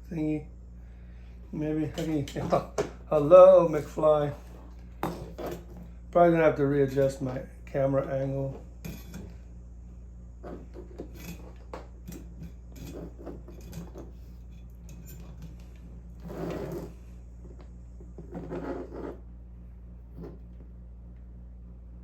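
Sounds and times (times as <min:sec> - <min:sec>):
low electrical hum: 0:00.0 - 0:22.0
objects scraping and rubbing: 0:01.4 - 0:06.1, 0:08.0 - 0:09.5, 0:10.4 - 0:19.3, 0:20.1 - 0:20.5.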